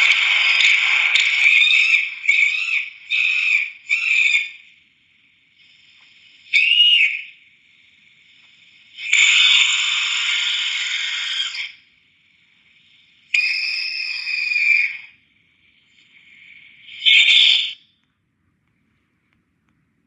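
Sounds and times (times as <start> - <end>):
cartoon screams: 0.5 - 4.6, 6.6 - 7.3, 9.0 - 11.8, 13.4 - 15.1.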